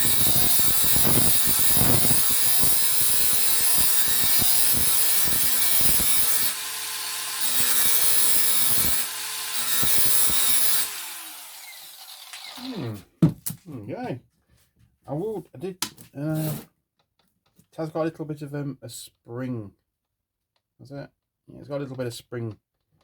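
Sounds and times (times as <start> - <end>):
motor winding down: 0.0 - 13.0
angle grinder grinding metal: 0.0 - 13.1, 16.3 - 16.6.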